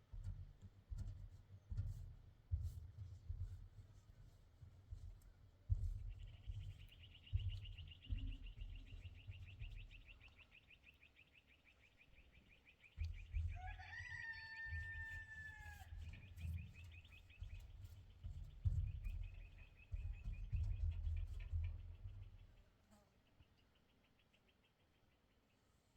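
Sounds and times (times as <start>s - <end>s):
low rumbles and thumps: 4.6s - 10.4s, 13.0s - 13.6s, 15.9s - 22.6s.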